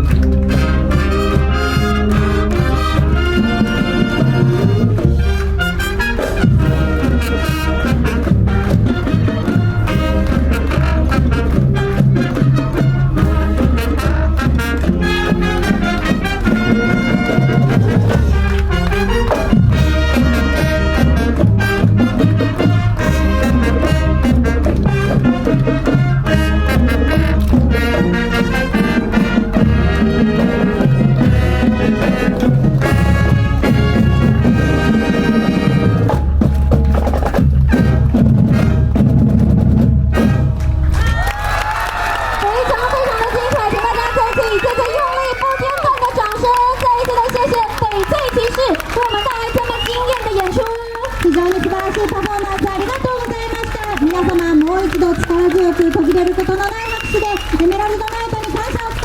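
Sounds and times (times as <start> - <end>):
brass and woodwind chords: 0.0 - 46.1
drums striking the beat: 0.0 - 59.0
wind band playing: 0.0 - 59.0.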